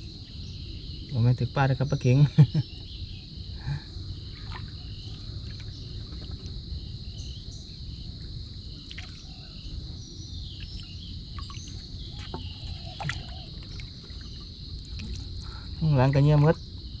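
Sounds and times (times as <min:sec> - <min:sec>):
insects trilling: 0:00.0 - 0:17.0
faint chirps and clicks: 0:10.5 - 0:15.6.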